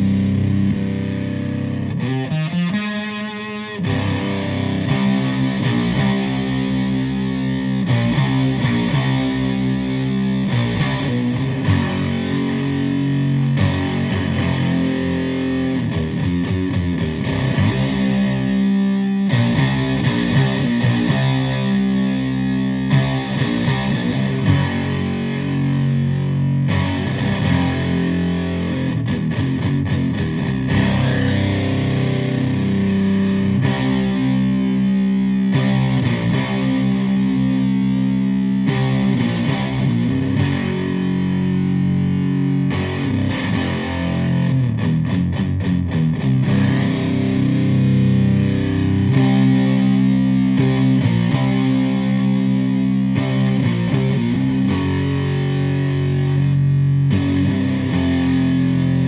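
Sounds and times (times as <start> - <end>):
fuzz electric guitar riffs: 0.0 - 59.0.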